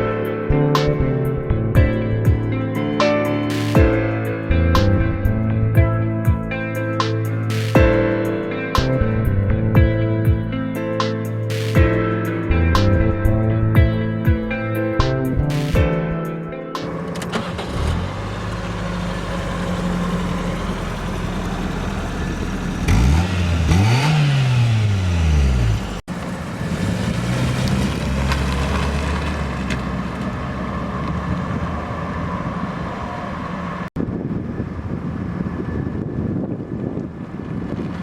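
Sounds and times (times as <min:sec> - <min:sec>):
car engine idling and revving: 0:00.0 - 0:07.7, 0:16.8 - 0:38.0.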